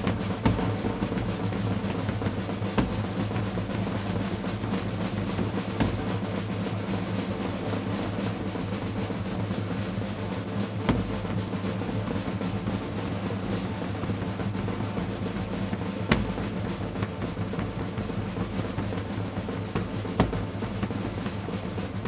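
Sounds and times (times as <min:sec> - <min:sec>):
bass drum: 0:00.0 - 0:22.0
snare drum roll: 0:00.0 - 0:22.0
sharp knocks: 0:10.9 - 0:11.1.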